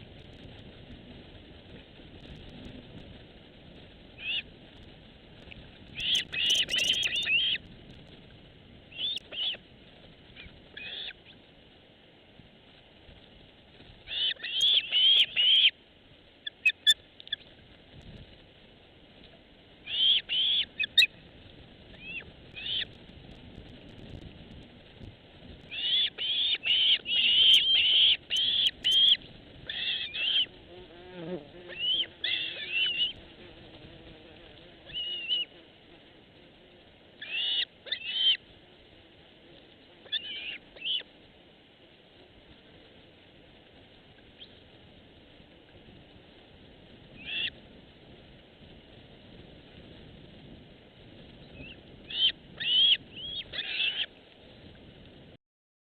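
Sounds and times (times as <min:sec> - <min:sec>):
bird chirping: 0:06.0 - 0:07.6, 0:09.0 - 0:09.6, 0:14.1 - 0:15.7, 0:25.7 - 0:30.5.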